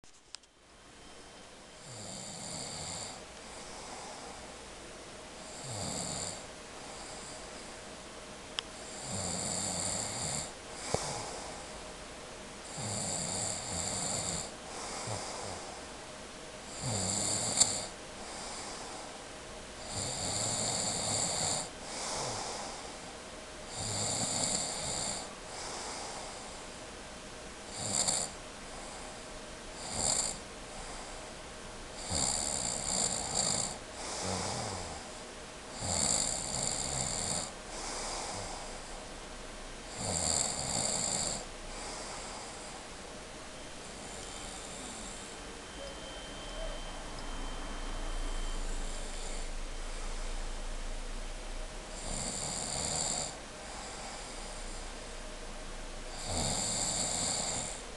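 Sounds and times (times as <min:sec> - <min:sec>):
person snoring: 0:01.8 - 0:04.4, 0:05.5 - 0:07.4, 0:08.8 - 0:11.7, 0:12.6 - 0:15.9, 0:16.7 - 0:19.1, 0:19.8 - 0:23.0, 0:23.7 - 0:26.6, 0:27.7 - 0:29.0, 0:29.8 - 0:31.1, 0:32.0 - 0:39.0, 0:39.9 - 0:43.0, 0:43.9 - 0:45.4, 0:48.7 - 0:50.6, 0:52.0 - 0:54.9, 0:56.1 - 0:57.9.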